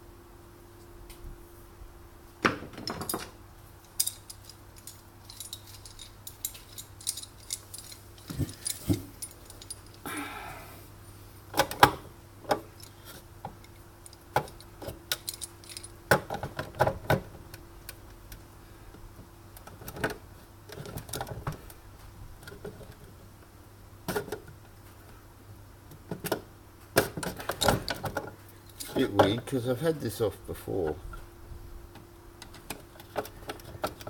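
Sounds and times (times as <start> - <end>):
faint steady hum: 0.0 - 34.0
metallic clicks and rattles: 2.8 - 10.0, 11.5 - 17.2, 31.9 - 34.0.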